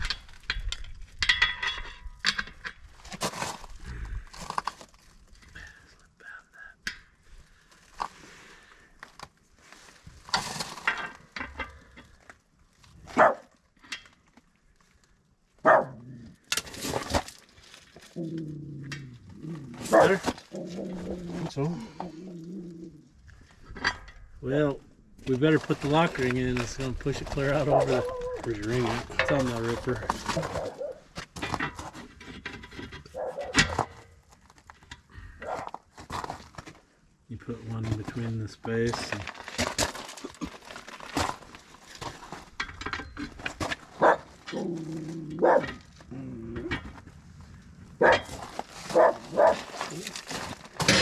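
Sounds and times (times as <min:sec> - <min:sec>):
metal clinks and knocks: 0:00.0 - 0:03.2, 0:37.9 - 0:47.1
clatter from work on wheel: 0:00.0 - 0:03.5
dog barking: 0:13.2 - 0:13.5, 0:15.6 - 0:16.0, 0:19.9 - 0:20.2, 0:30.5 - 0:31.0, 0:33.1 - 0:33.6, 0:44.0 - 0:44.3, 0:45.4 - 0:45.7, 0:48.0 - 0:48.2, 0:48.9 - 0:49.6.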